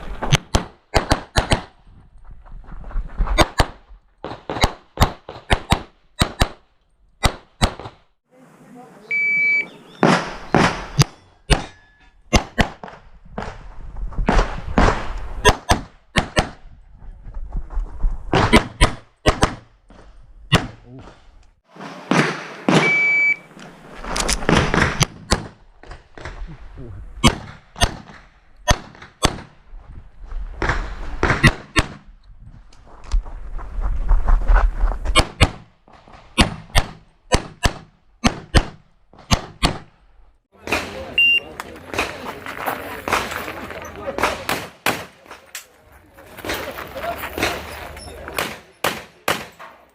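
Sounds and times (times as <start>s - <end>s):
rustling noise: 1.9s - 3.4s, 16.8s - 18.4s, 21.6s - 26.6s, 32.3s - 36.3s
handgun shots: 48.4s - 49.7s.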